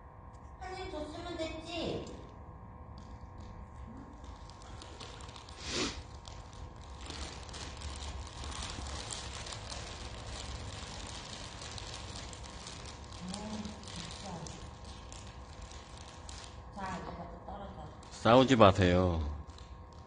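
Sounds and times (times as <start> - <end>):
candy wrapper crinkling: 4.1 - 17.0, 17.9 - 20.0.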